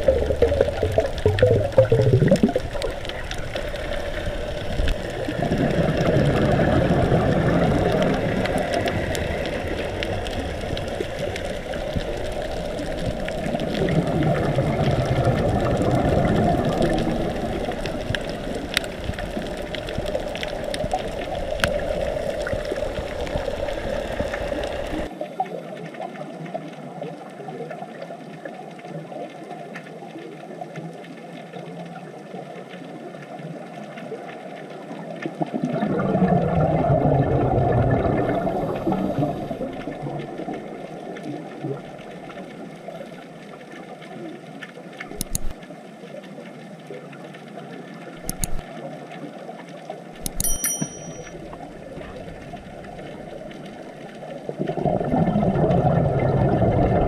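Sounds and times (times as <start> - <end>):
low rumble: 0.0 - 25.1
faint clicks: 0.0 - 26.9, 38.7 - 55.2
underwater rush of water: 0.0 - 57.0.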